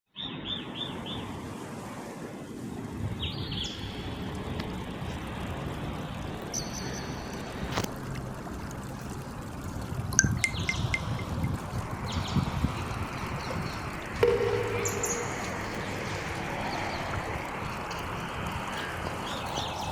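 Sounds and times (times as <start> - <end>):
birds chirping: 10.2 - 11.4, 14.2 - 16.9
thin whistle: 14.2 - 16.2.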